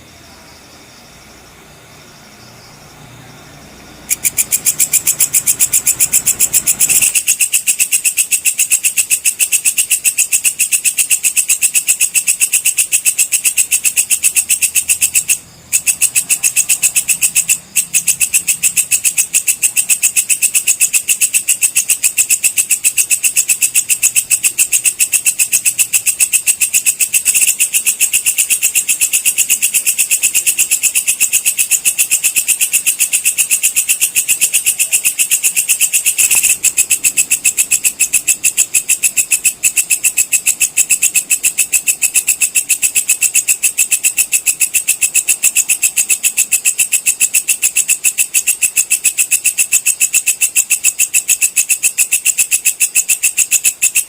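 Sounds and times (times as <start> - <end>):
insect chirping pulses: 0.0 - 54.0.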